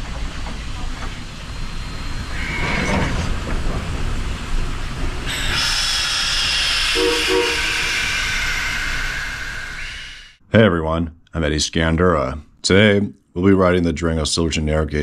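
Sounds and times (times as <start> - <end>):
loud steam hiss: 0.0 - 10.4
steam train rumbling: 0.0 - 10.4.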